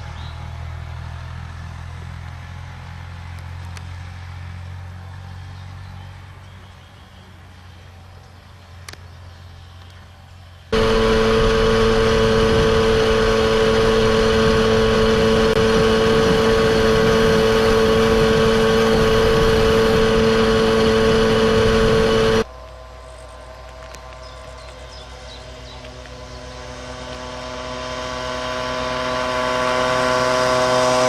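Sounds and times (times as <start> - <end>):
moped engine running flat out: 10.7 - 22.5, 23.5 - 31.0.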